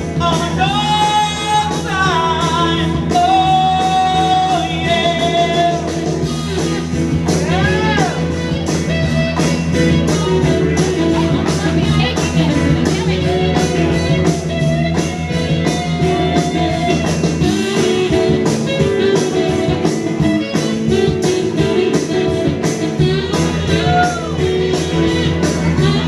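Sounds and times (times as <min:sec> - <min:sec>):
drum beat: 0:00.0 - 0:26.0
person singing: 0:00.0 - 0:26.0
rock band playing: 0:00.0 - 0:26.0.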